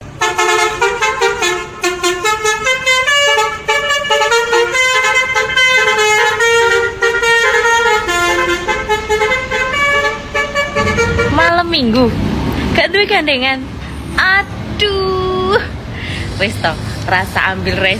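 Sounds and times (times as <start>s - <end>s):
musical air horn tune: 0.2s - 11.7s.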